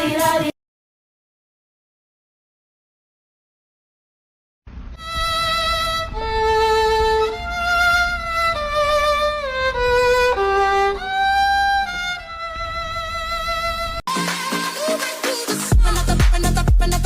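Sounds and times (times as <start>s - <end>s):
slow violin melody: 4.9s - 14.0s.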